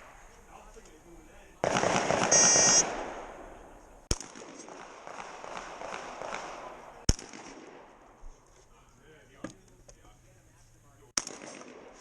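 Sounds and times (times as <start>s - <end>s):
shotgun shot: 1.6s - 8.0s, 11.2s - 12.0s
shot timer buzzer: 2.3s - 2.8s.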